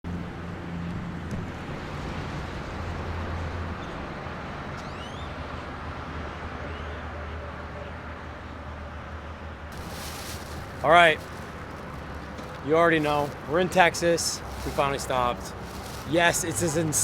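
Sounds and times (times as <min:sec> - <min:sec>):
vehicle engine and road drone: 0:08.7 - 0:17.0.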